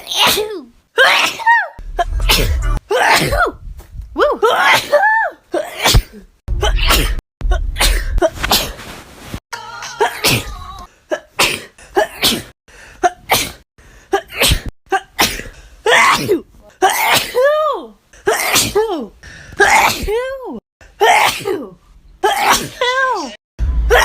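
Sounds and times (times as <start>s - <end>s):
woman sneezing: 0.1s - 3.5s, 4.4s - 8.8s, 9.9s - 13.6s, 14.2s - 17.6s, 18.3s - 19.0s, 21.0s - 24.0s
high-pitched gasping intakes: 19.2s - 19.8s.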